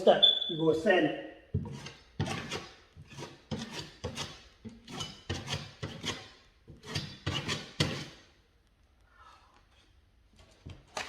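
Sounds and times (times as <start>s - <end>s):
hand tool scraping wood: 1.6s - 8.2s.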